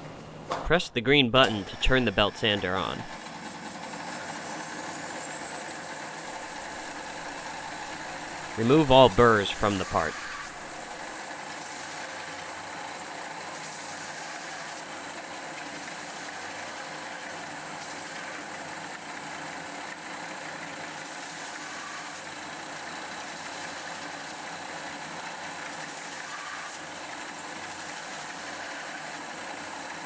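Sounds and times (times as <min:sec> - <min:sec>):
belt sander running: 0:02.6 - 0:17.4
faint high whine: 0:05.3 - 0:11.0.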